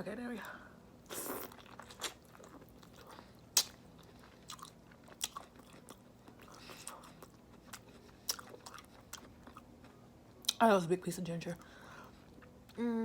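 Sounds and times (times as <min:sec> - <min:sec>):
person chewing with wet smacks: 0:01.0 - 0:10.6.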